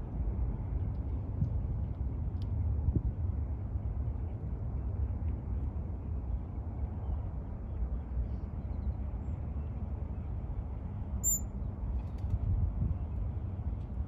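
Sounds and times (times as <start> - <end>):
short high-pitched chirp: 11.2 - 11.4.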